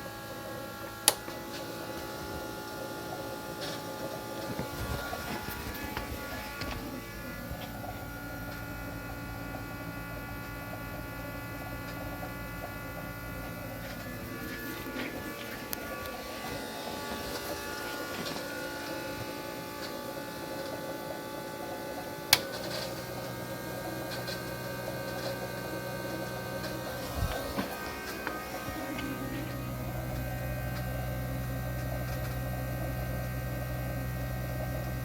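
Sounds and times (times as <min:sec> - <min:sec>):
electric fuel pump buzzing: 0:00.0 - 0:35.0.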